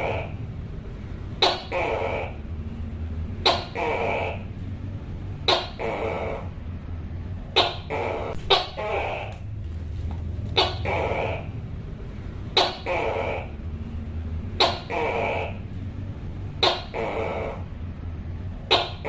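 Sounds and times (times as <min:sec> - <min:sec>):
gecko calling: 0:00.0 - 0:00.4, 0:01.4 - 0:02.5, 0:03.4 - 0:04.6, 0:05.4 - 0:06.6, 0:07.5 - 0:09.6, 0:10.5 - 0:11.6, 0:12.5 - 0:13.6, 0:14.6 - 0:15.7, 0:16.6 - 0:17.7, 0:18.7 - 0:19.0.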